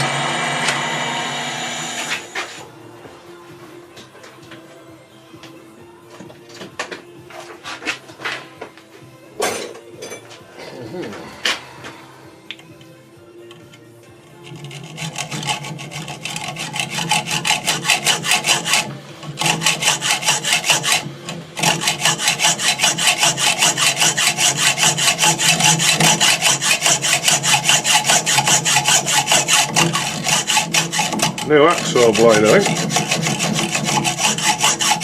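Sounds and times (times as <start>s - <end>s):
hacksaw cutting steel bolt: 14.4s - 35.0s.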